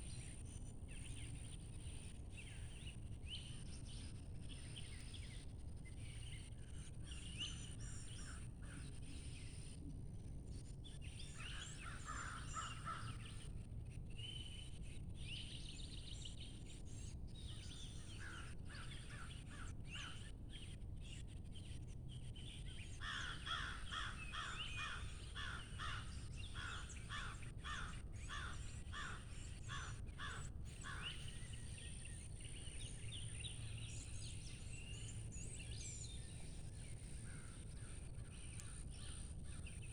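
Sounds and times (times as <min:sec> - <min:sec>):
wild birds calling and singing: 0:23.0 - 0:39.8.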